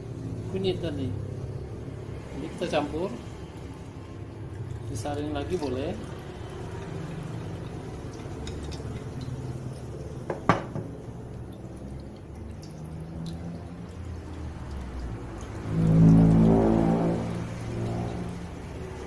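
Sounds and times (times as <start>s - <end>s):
liquid pouring: 0.0s - 19.0s
glassware clinking: 8.1s - 10.9s.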